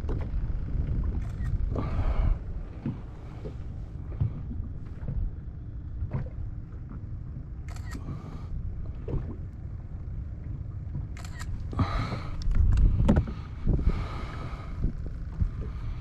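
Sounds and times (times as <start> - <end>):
wind and water rumble: 0.0 - 16.0
small clicks: 11.1 - 11.6.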